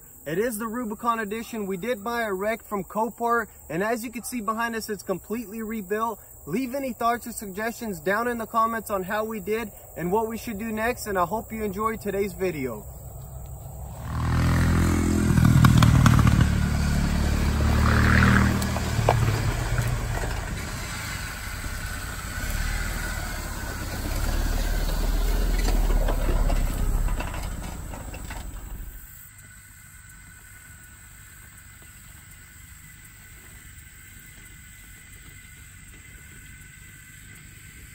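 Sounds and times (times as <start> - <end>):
faint hiss: 2.3 - 37.9
car engine revving: 13.7 - 29.2.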